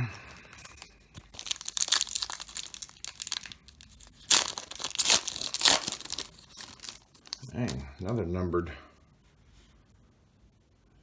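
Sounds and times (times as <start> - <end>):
foil wrapper tearing and crinkling: 0.0 - 7.8.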